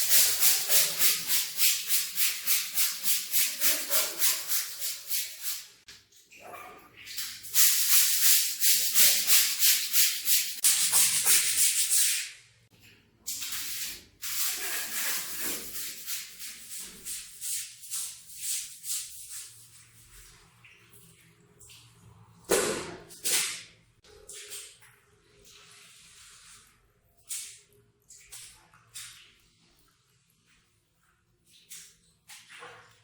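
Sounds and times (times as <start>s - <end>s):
stiff brush scrubbing a rug: 0.0s - 5.4s.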